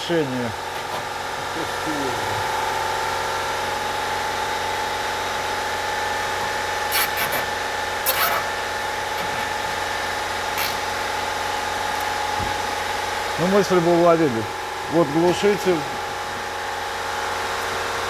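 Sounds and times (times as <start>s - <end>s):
steady machine hum: 0.0s - 18.0s.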